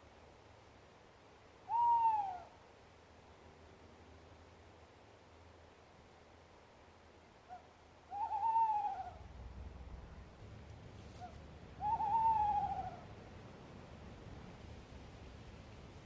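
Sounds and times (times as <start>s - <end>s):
owl calling: 1.7s - 2.6s, 7.5s - 9.2s, 11.1s - 13.1s.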